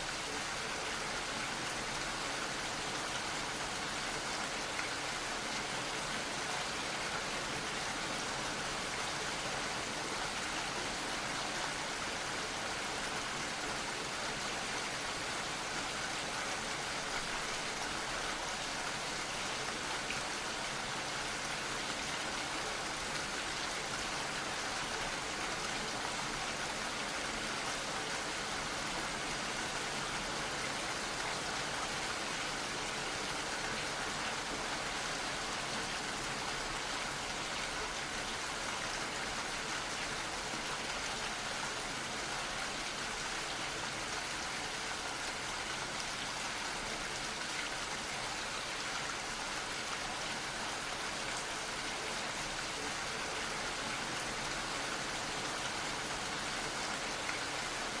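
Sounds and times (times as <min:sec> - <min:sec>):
gentle rain falling: 0:00.0 - 0:58.0.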